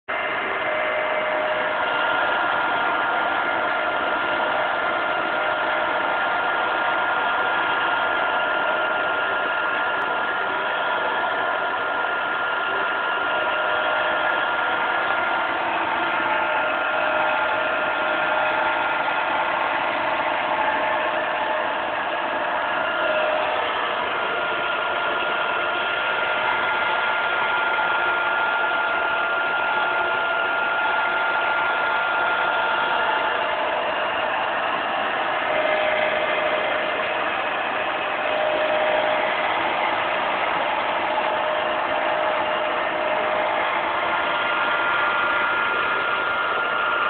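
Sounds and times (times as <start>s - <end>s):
machine tool whine: 0.1s - 47.0s.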